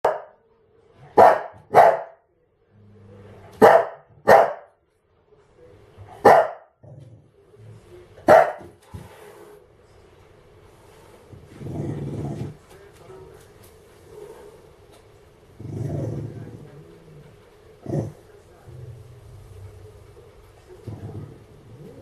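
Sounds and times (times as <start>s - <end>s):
dog barking: 0.0s - 0.4s, 1.1s - 2.2s, 3.6s - 4.7s, 6.2s - 6.7s, 8.2s - 8.7s.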